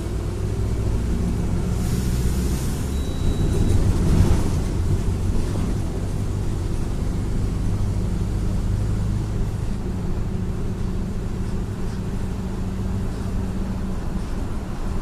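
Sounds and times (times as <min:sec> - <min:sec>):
diesel bus engine droning: 0:00.0 - 0:15.0.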